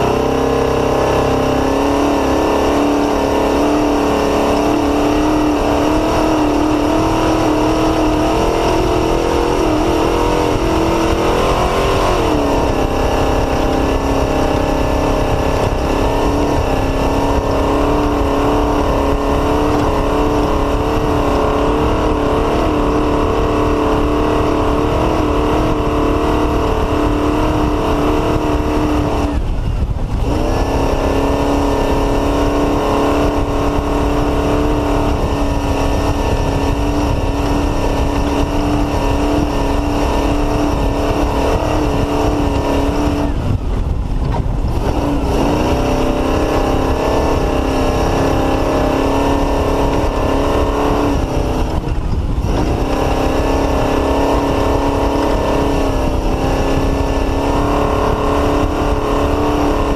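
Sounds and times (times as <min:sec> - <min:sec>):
race car engine at high revs: 0:00.0 - 0:59.9.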